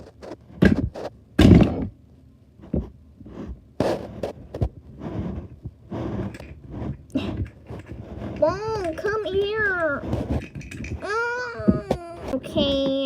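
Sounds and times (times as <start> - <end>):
plastic toys knocking: 6.3 - 13.0.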